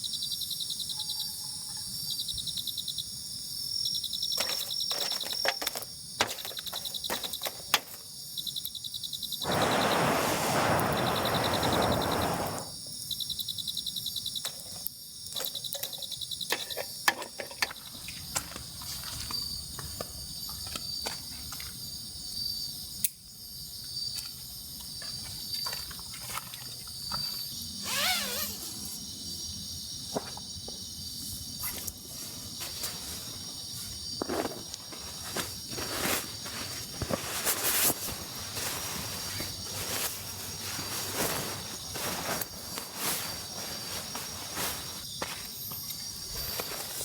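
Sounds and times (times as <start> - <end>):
insects chirping: 0.0 - 47.0
loud hissing rush: 9.4 - 12.7.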